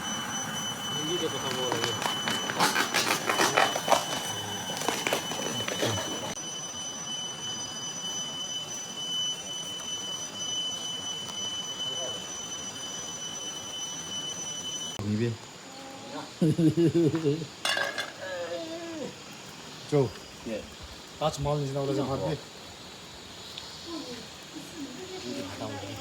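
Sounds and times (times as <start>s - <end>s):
high-pitched insect drone: 0.0s - 26.0s
rapid clicks and rustles: 1.2s - 6.4s.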